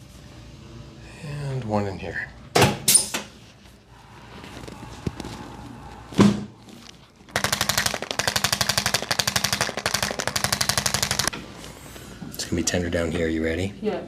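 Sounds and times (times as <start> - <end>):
massage gun hammering: 7.4 - 11.3.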